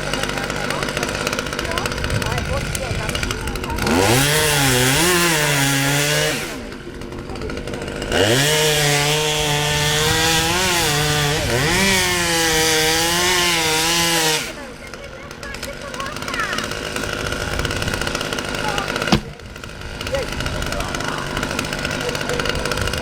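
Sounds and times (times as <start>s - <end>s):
chainsaw engine revving: 0.0s - 23.0s.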